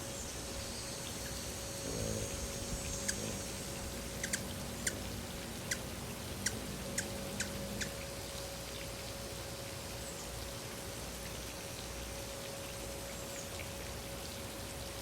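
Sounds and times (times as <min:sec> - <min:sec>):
faint steady hiss: 0:00.0 - 0:15.0
hummingbird chip calls: 0:00.2 - 0:08.1.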